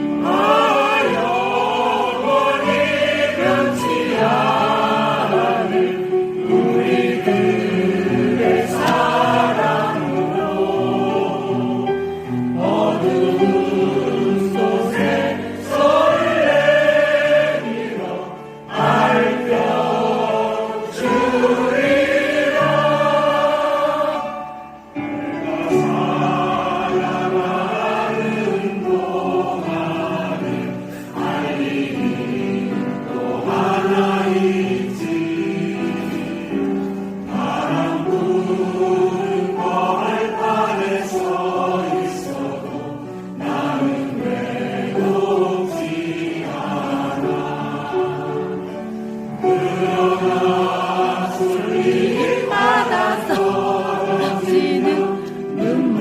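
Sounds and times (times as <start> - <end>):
choir singing: 0.0 - 56.0.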